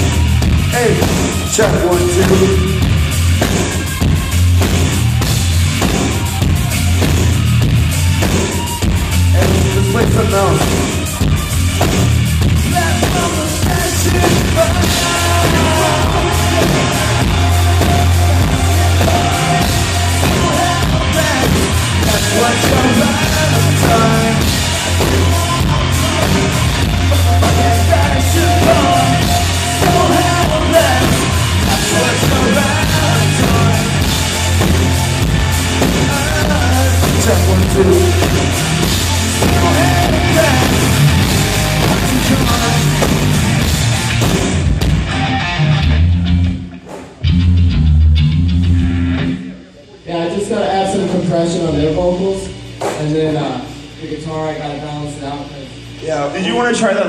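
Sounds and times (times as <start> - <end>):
rock band playing live: 0.0 - 49.8
person singing: 12.6 - 34.8, 35.6 - 43.5.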